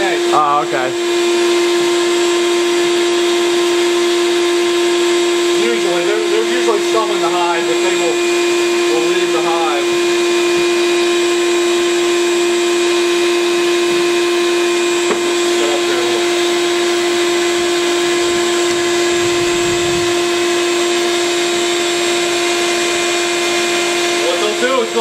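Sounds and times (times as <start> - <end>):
vacuum motor humming: 0.0 - 25.0
rushing air: 14.8 - 22.4.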